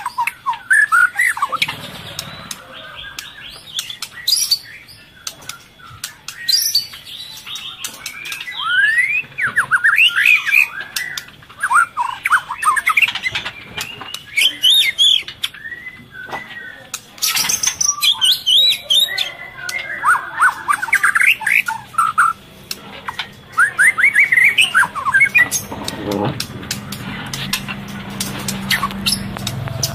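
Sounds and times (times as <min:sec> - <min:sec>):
bird chirps and squawky notes: 0:00.0 - 0:29.9
sharp clicks: 0:24.6 - 0:29.9.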